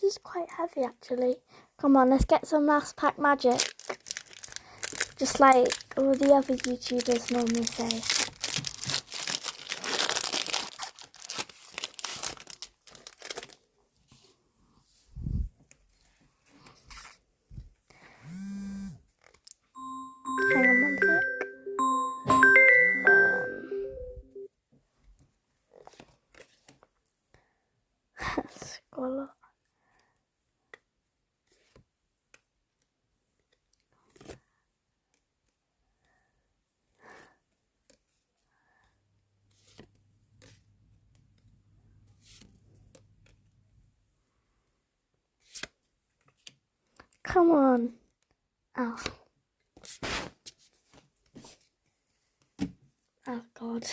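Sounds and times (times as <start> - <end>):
foil wrapper crinkling and tearing: 3.3 - 13.7
card pack clicks and rustles: 3.4 - 13.7.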